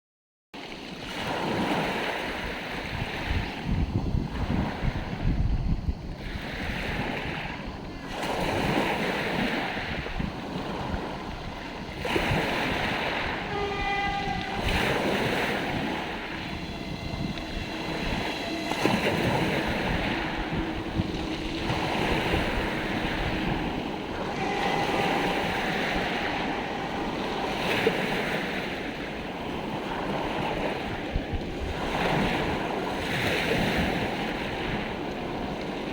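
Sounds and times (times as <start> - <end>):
sea waves washing ashore: 0.6 - 35.9
steady pitched tone: 8.8 - 35.9.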